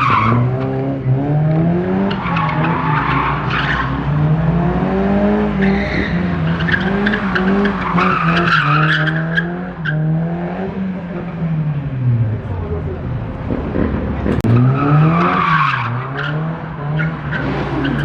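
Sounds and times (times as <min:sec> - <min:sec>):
car engine revving high: 0:00.0 - 0:12.4
tyres screeching: 0:05.6 - 0:10.0.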